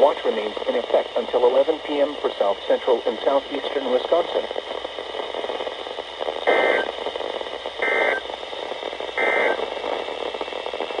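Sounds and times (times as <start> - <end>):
radio hiss: 0.0 - 11.0
buzzy digital bursts: 6.5 - 6.9, 7.8 - 8.2, 9.2 - 9.6.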